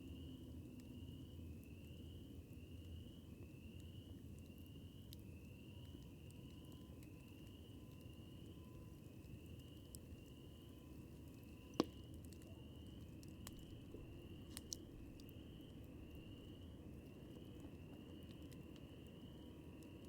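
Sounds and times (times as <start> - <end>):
campfire crackling hiss: 0.0 - 20.0
sharp pops of burning wood: 11.7 - 12.4, 13.3 - 15.4.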